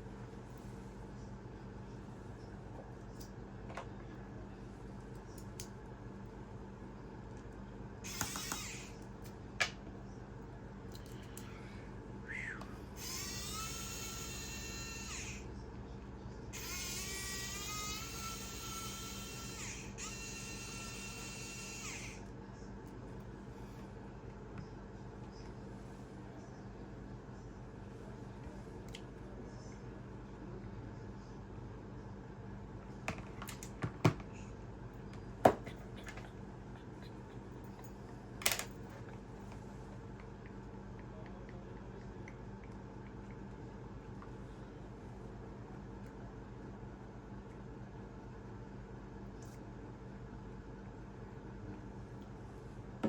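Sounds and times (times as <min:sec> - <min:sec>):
low electrical hum: 0:00.0 - 0:53.0
electric screwdriver motor whine: 0:08.1 - 0:09.0, 0:13.0 - 0:15.4, 0:16.6 - 0:22.2.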